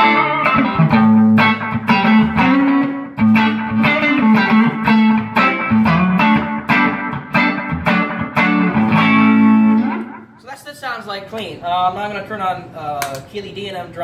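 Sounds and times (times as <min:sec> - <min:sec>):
clean electric guitar playing: 0:00.0 - 0:10.4.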